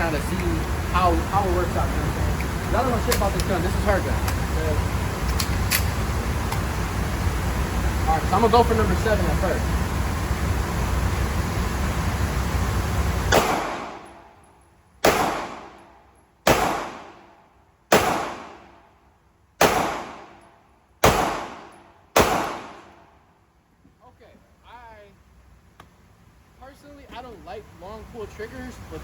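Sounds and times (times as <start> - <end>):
steady rushing noise: 0.0 - 14.0
pistol shots echoing: 13.3 - 14.2, 15.0 - 18.8, 19.6 - 20.4, 21.0 - 23.0.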